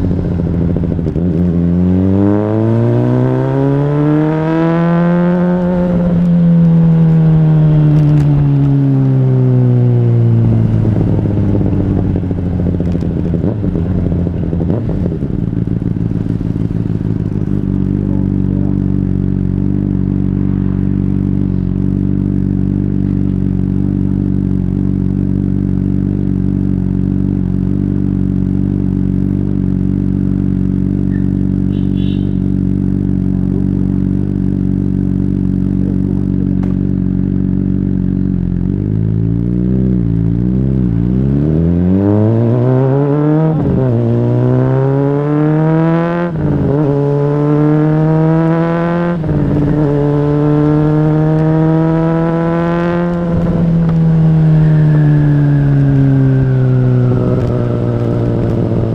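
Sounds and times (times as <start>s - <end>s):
motorcycle engine accelerating: 0.0s - 58.9s.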